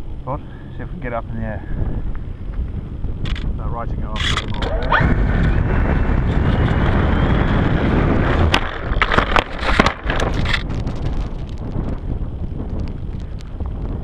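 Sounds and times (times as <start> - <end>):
wind buffeting microphone: 0.0 - 14.0
sharp knocks and rattles: 8.5 - 11.6.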